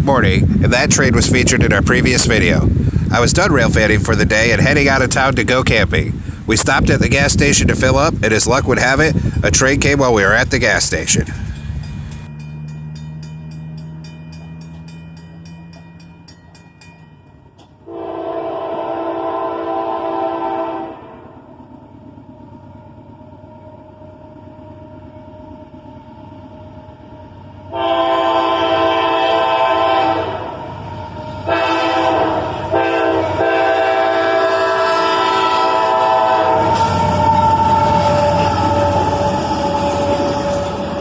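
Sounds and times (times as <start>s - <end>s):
low locomotive rumble: 0.0s - 41.0s
locomotive air horn blasts: 17.8s - 21.4s, 27.7s - 41.0s.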